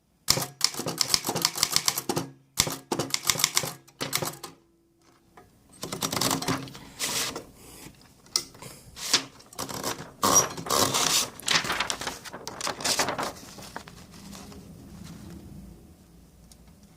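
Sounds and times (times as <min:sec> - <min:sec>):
typewriter rasps and clicks: 0:00.3 - 0:04.6, 0:05.8 - 0:07.4, 0:09.0 - 0:13.8.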